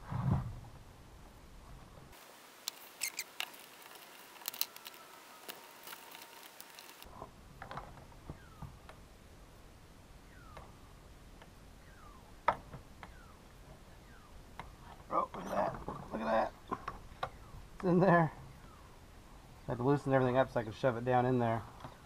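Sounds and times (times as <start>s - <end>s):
faint clicks of small parts: 2.6s - 7.1s
rubber squeaking: 2.7s - 7.1s.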